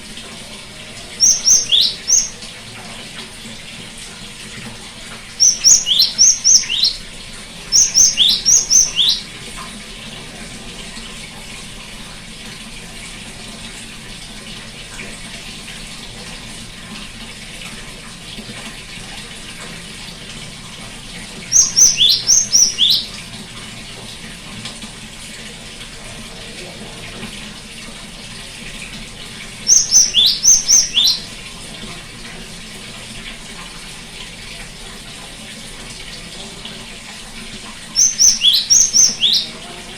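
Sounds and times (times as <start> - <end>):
running water: 0.0 - 39.9
great tit singing: 1.2 - 2.5, 5.4 - 7.1, 7.7 - 9.3, 21.5 - 23.1, 29.6 - 31.3, 38.0 - 39.7.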